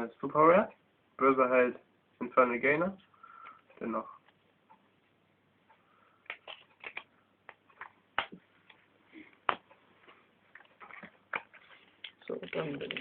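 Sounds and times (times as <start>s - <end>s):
trading cards clicking and rustling: 6.2s - 8.8s, 10.5s - 13.0s.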